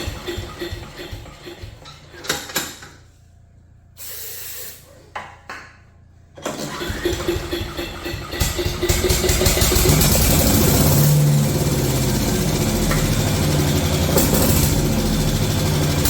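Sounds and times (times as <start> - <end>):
small gas engine running roughly: 0.0 - 2.1, 6.4 - 16.0.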